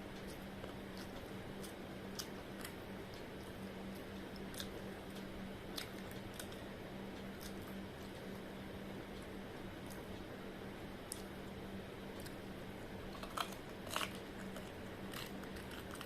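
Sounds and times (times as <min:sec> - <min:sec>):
steady low hum: 0:00.0 - 0:16.0
person chewing crisp food: 0:00.2 - 0:06.6, 0:07.2 - 0:08.2, 0:13.1 - 0:16.0.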